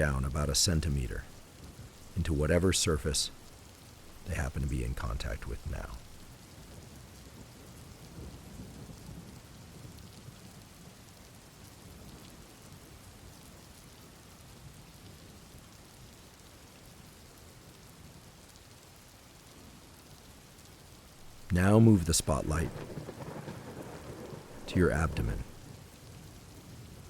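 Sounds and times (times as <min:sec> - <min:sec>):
steady rain: 0:00.0 - 0:27.0
low rumble of thunder: 0:21.2 - 0:27.0.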